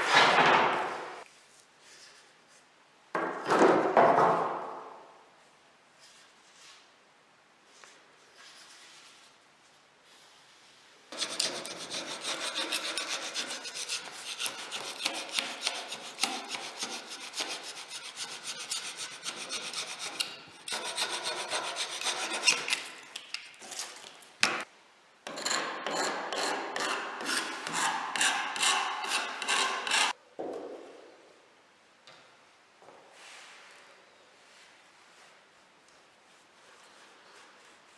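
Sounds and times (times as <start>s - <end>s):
hand tool rubbing a surface: 11.1s - 23.2s, 25.3s - 30.2s, 36.2s - 37.9s.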